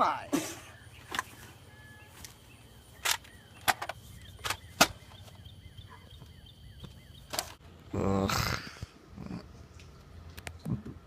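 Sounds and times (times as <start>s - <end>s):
faint chirping: 0.5s - 7.6s.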